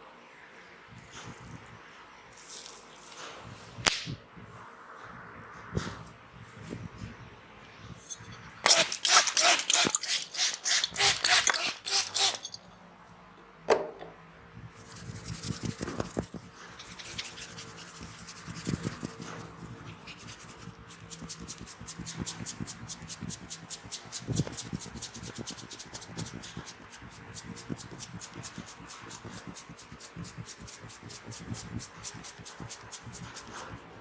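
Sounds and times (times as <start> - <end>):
skin rubbing on skin: 2.4 - 3.5, 14.8 - 34.0
quick slaps on the body: 3.8 - 4.2.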